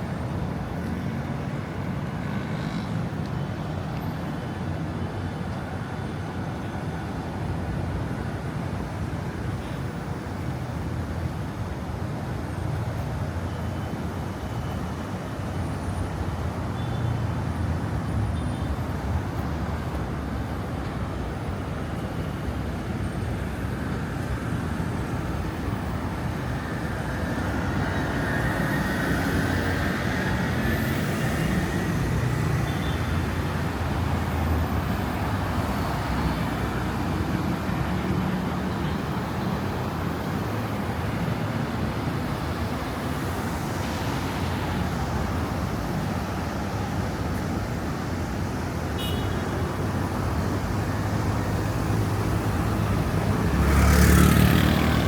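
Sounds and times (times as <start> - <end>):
rumble of passing vehicles: 0.0 - 55.0.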